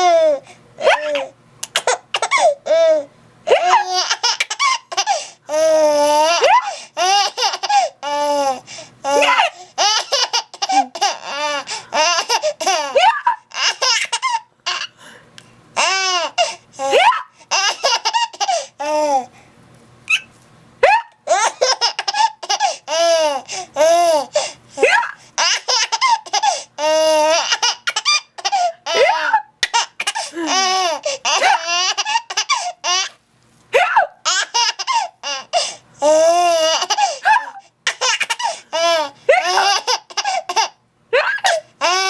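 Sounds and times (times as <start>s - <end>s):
young child laughing: 3.5s - 5.2s, 27.2s - 32.6s, 36.6s - 41.6s.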